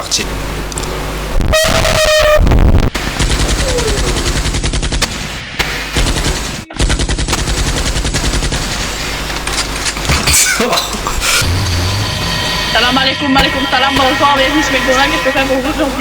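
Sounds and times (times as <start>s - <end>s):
machine-gun automatic fire: 3.0s - 10.0s.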